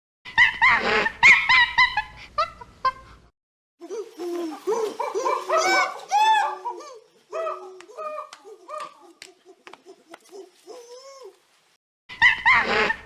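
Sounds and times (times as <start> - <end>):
lower-pitched chorus of calls: 3.8 - 11.4.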